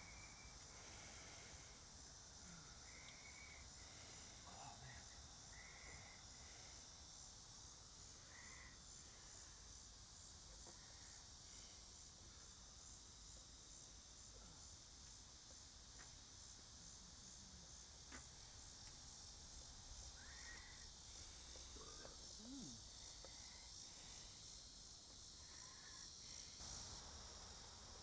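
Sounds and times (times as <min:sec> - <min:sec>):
high-pitched insect chorus: 0:00.0 - 0:28.0.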